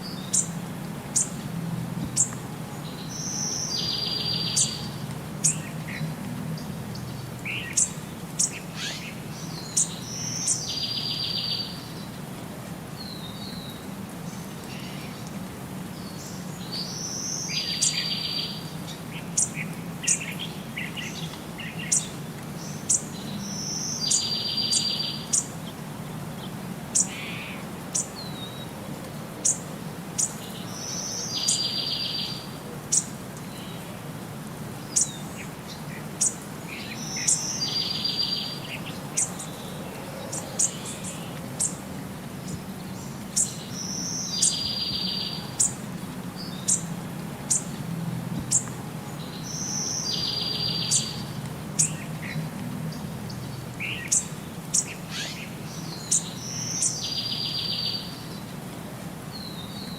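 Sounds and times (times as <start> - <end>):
bird song with buzzy trill: 36.2 - 38.6, 42.9 - 45.8.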